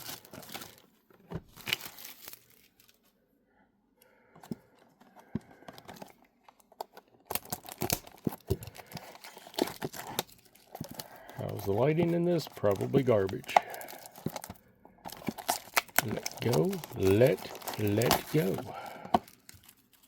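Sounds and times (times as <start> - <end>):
plastic wrap tearing and crinkling: 0.0 - 0.9, 1.5 - 3.0, 6.8 - 20.0.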